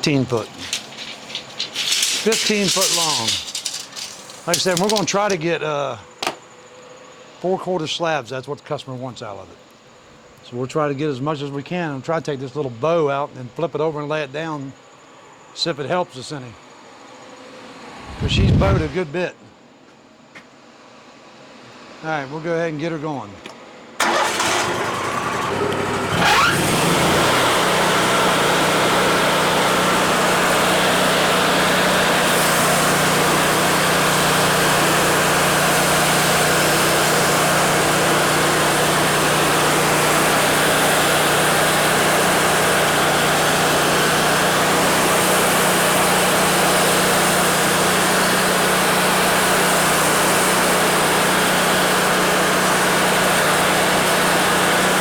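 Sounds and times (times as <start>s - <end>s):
sawmill engine revving: 24.0s - 55.0s.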